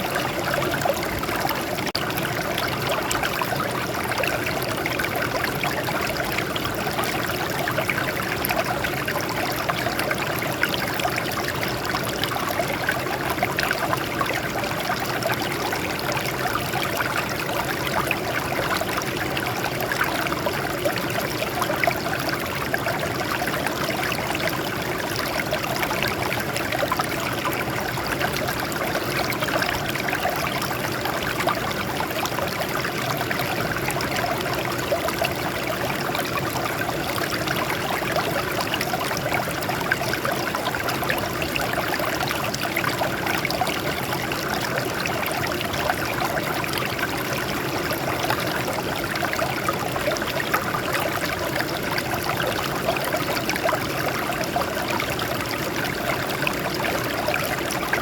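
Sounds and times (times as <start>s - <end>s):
stream water over rocks: 0.0s - 58.0s.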